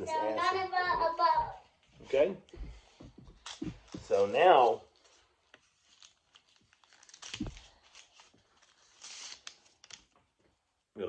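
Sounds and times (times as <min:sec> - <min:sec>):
crinkly rustling scrapes: 0:04.0 - 0:10.0.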